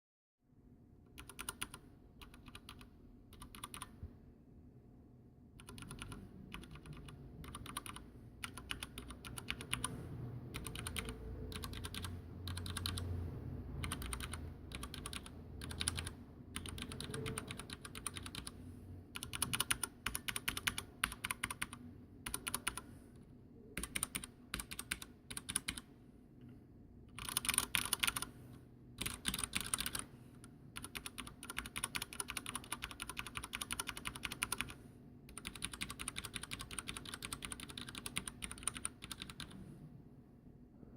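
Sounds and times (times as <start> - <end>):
mechanical keyboard typing: 1.1 - 4.0, 5.6 - 22.9, 23.7 - 25.9, 27.1 - 28.4, 29.0 - 39.6.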